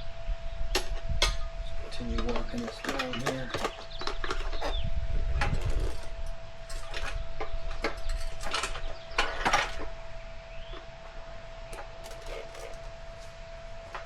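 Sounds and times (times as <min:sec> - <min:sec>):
tire irons clicking on metal rim: 0:02.2 - 0:04.8, 0:05.4 - 0:09.9, 0:11.7 - 0:13.3.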